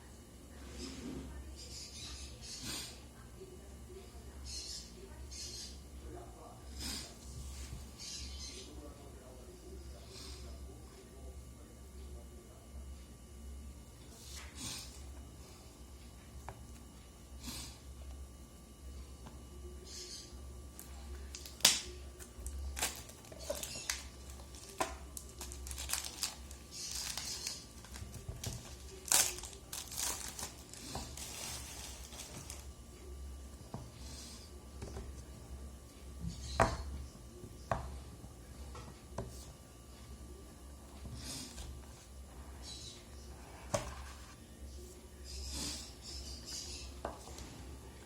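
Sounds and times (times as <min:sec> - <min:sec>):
faint low hum: 0:00.0 - 0:48.0
packaging crinkling and tearing: 0:21.3 - 0:32.7.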